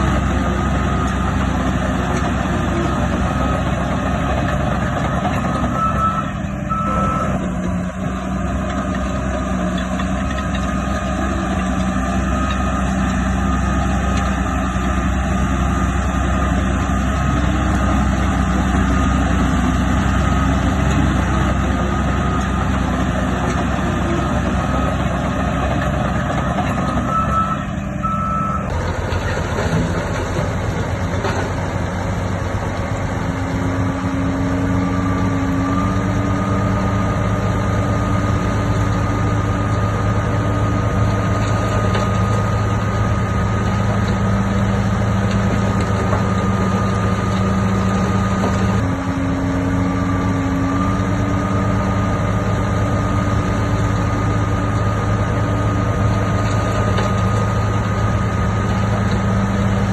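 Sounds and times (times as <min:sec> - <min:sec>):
heavy diesel engine running: 0:00.0 - 0:59.9
reverse alarm beeping: 0:05.6 - 0:07.4, 0:27.0 - 0:28.7.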